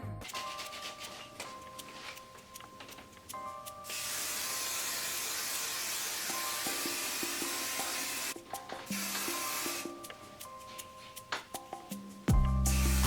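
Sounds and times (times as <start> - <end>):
aerosol can spraying: 3.8 - 10.9, 12.6 - 13.0.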